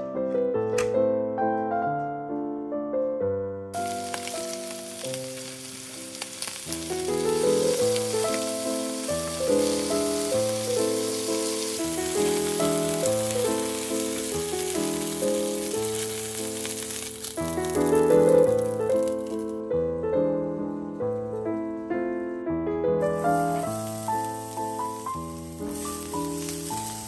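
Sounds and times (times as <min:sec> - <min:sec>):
piano chords: 0:00.0 - 0:27.0
crackling hiss: 0:03.8 - 0:19.7, 0:23.0 - 0:27.0.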